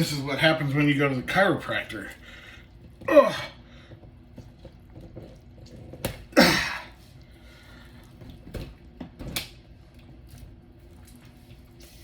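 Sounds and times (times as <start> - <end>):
man straining grunt: 6.4 - 6.9.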